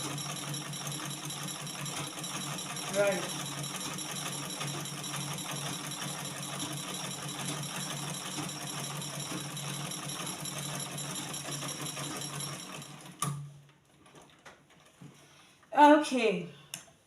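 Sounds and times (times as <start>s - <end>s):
treadle sewing machine stitching: 0.0s - 13.4s.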